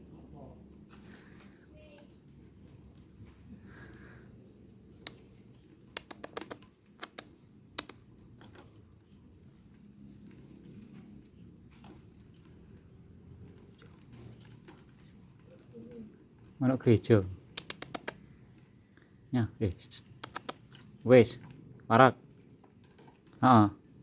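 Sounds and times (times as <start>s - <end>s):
faint sharp clicks and taps: 17.5s - 18.2s.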